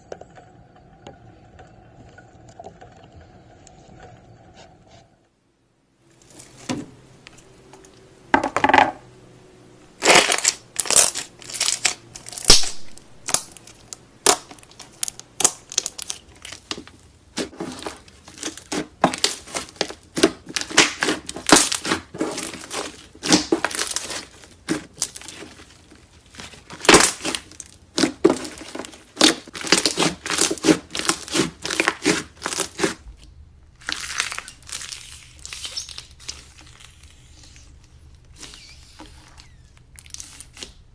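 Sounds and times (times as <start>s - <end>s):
slime crackling and popping: 10.0s - 33.2s, 33.8s - 40.9s.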